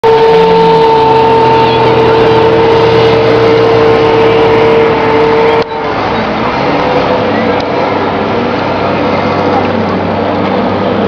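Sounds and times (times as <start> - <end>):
small boat motor whining: 0.0 - 11.0.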